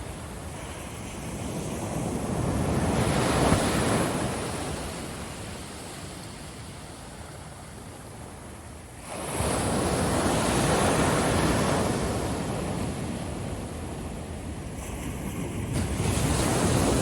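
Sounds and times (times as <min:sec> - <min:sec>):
ocean wave breaking on beach: 0:14.9 - 0:17.0.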